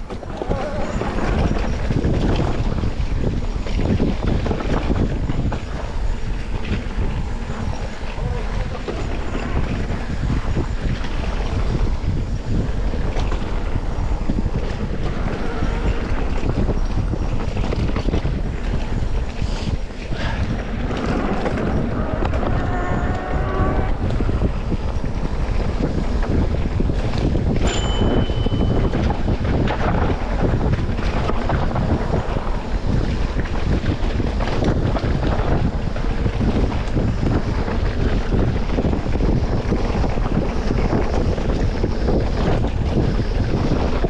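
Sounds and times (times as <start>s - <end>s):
short rattles and knocks: 0.0s - 3.0s
wind buffeting microphone: 0.0s - 44.0s.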